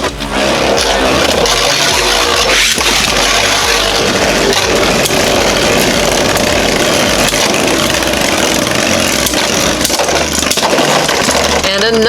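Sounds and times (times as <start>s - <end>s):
spinning tops whirring and grinding: 0.0s - 12.0s.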